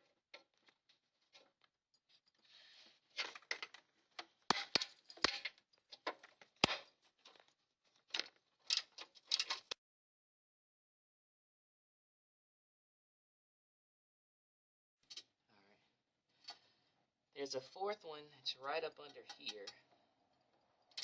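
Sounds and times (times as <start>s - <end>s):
hand tools clicking and clinking: 3.2s - 7.5s, 19.0s - 21.0s.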